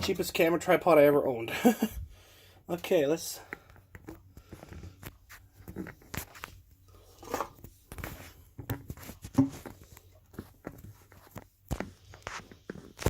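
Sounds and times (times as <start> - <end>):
objects handled clicks and knocks: 3.5 - 6.6.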